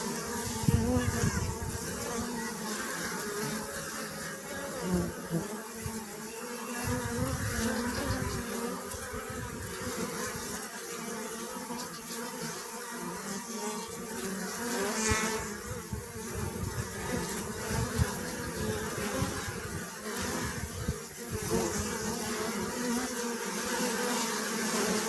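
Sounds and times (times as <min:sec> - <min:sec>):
bees buzzing: 0:00.0 - 0:25.0.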